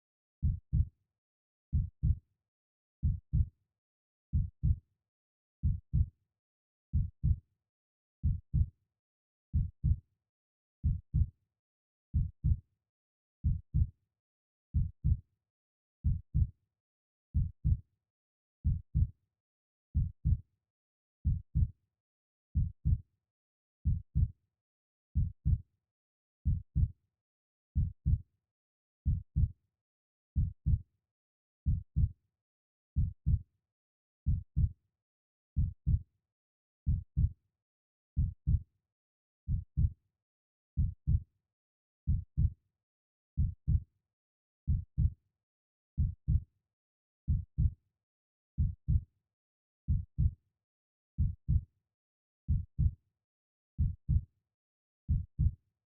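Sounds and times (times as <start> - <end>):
heartbeat thumps: 0.4 - 0.8, 6.9 - 7.4, 17.4 - 17.8, 23.8 - 24.3, 34.3 - 34.7, 36.9 - 37.3, 39.5 - 39.9, 40.8 - 41.2, 42.1 - 42.5, 43.4 - 43.8, 47.3 - 47.7, 49.9 - 50.3, 51.2 - 51.6, 53.8 - 54.2.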